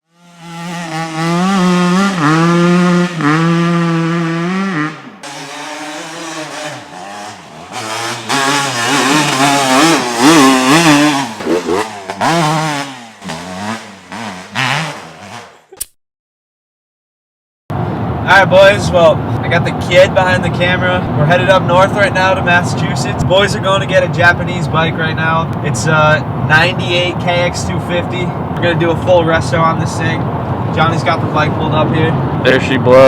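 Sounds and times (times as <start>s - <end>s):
dirt bike engine revving: 0.0s - 15.7s.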